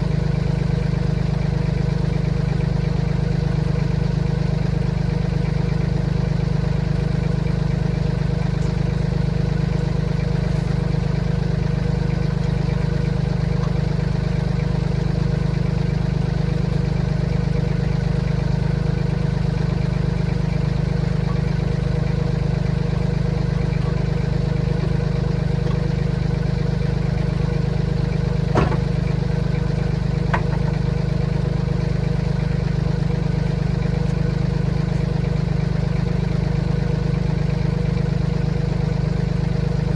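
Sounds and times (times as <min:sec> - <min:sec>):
tractor engine idling: 0:00.0 - 0:39.9
metallic clanks: 0:28.5 - 0:29.2.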